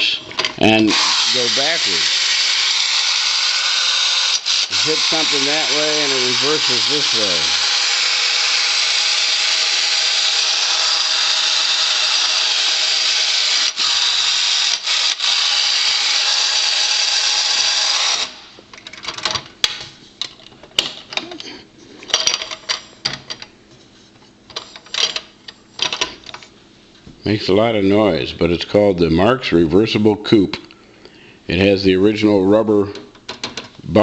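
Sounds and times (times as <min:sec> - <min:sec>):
wind-up toy car motor whirring: 0:00.7 - 0:18.4.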